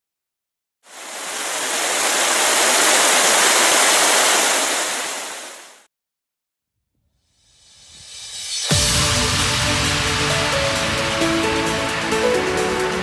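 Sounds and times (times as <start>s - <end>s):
steady rushing noise: 0.9s - 5.8s.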